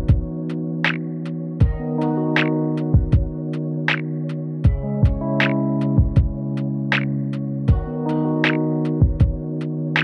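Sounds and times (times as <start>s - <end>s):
kick drum thuds: 0.0s - 0.3s, 1.6s - 1.8s, 3.0s - 3.4s, 4.7s - 5.2s, 6.0s - 6.4s, 7.7s - 7.9s, 9.0s - 9.4s
held synth chords: 0.0s - 10.0s
snare hits: 0.9s - 1.1s, 6.9s - 7.2s.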